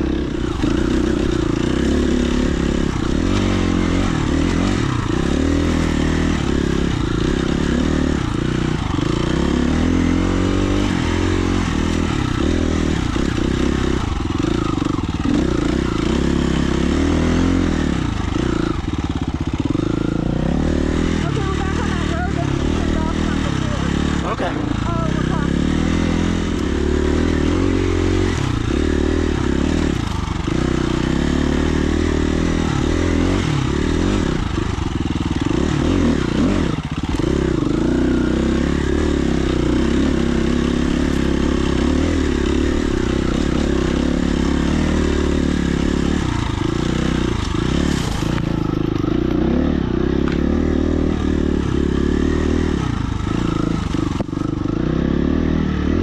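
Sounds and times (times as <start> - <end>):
dirt bike engine revving: 0.0 - 56.0.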